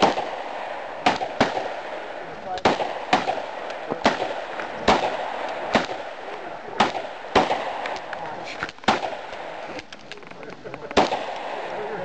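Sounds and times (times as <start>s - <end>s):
handgun shots: 0.0s - 1.8s, 2.5s - 6.1s
distant gunshots: 0.0s - 9.9s, 10.9s - 12.0s.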